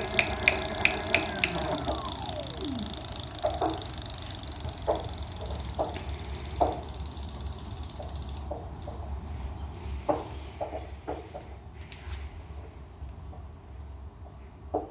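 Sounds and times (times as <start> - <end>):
low hum: 0.0 - 4.4
motor clicking: 0.0 - 8.5.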